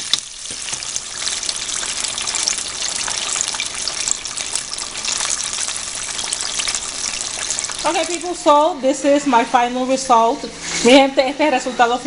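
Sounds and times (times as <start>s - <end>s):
chicken frying in hot oil: 0.0s - 8.8s.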